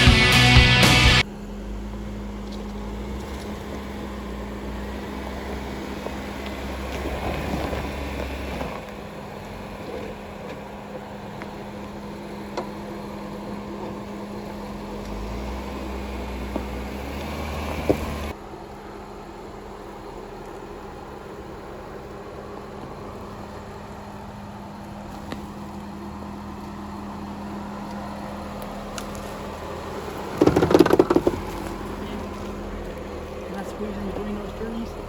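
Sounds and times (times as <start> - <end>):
off-road vehicle engine rumbling: 0.0 - 35.0
chassis knocks: 30.3 - 32.0.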